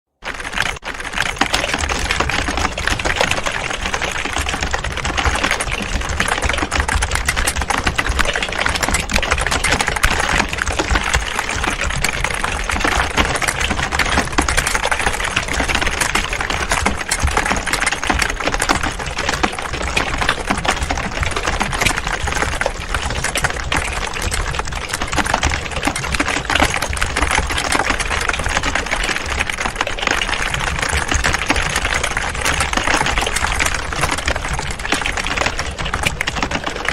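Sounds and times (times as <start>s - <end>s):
many people typing on keyboards: 0.2s - 36.9s.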